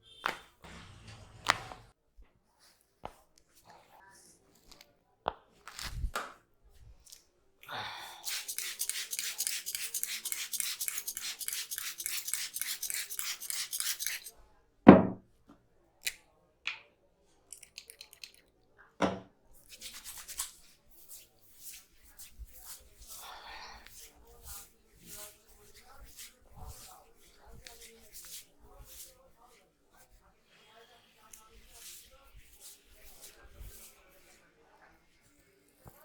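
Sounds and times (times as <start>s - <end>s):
massage strokes: 31.2s - 34.4s.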